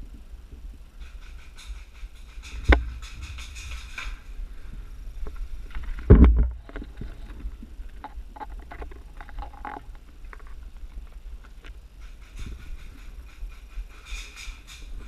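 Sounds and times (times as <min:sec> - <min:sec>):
small clicks and knocks: 0:01.0 - 0:04.3, 0:05.2 - 0:14.9
camera handling rumble: 0:05.2 - 0:13.2.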